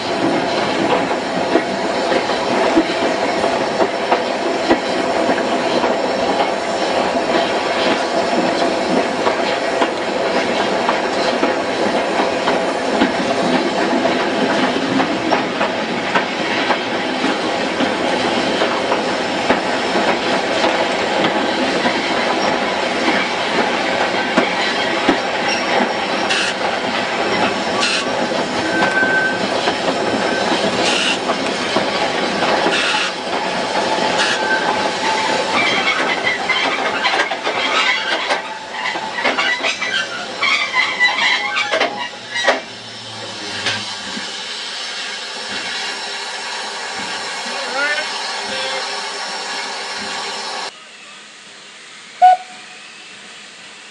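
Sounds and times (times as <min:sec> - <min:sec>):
train rumbling and rattling: 0:00.0 - 0:50.8
short sharp high sounds: 0:52.2 - 0:52.8.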